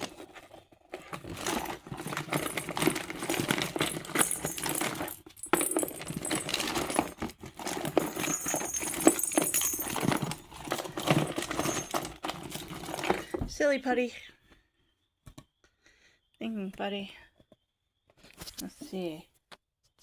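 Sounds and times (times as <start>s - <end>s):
plastic toys clicking and rattling: 0.0s - 13.4s.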